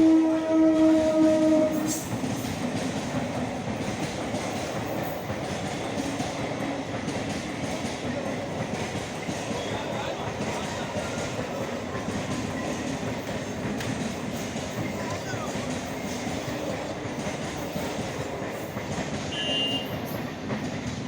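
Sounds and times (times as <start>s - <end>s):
train horn: 0.0s - 2.1s, 19.2s - 20.2s
train cars running over rails: 0.0s - 21.0s.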